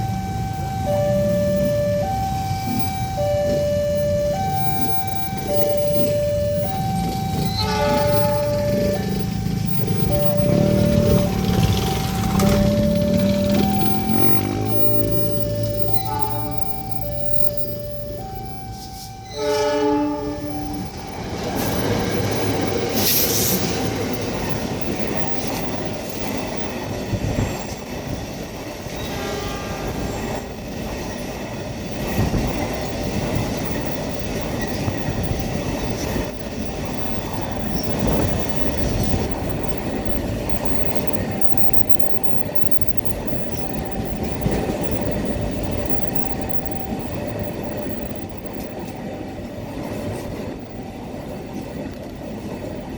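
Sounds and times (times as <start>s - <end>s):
falling run of tones: 0.0s - 19.4s
train wheels clacking: 0.0s - 52.9s.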